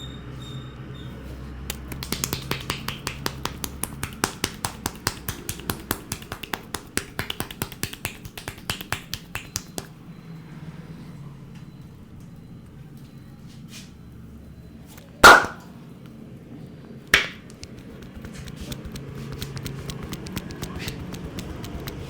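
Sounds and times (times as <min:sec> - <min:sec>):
sharp hand clicks: 0:01.7 - 0:10.0, 0:17.2 - 0:22.0.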